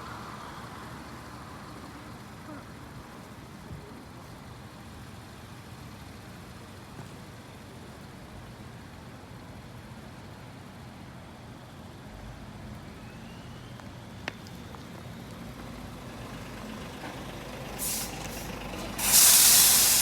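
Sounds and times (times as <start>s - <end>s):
highway traffic rumble: 0.0s - 20.0s
truck air brakes hissing: 17.4s - 20.0s.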